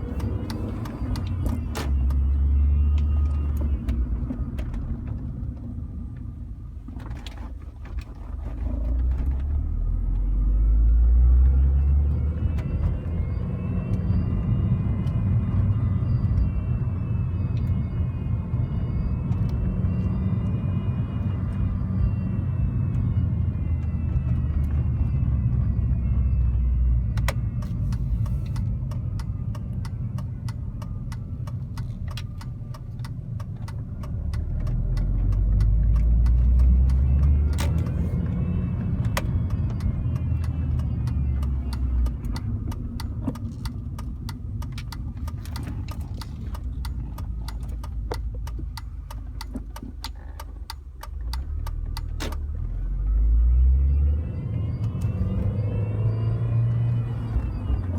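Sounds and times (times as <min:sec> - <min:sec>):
car engine and road rumble: 0:00.0 - 0:57.9
sharp irregular clicks: 0:39.1 - 0:52.5.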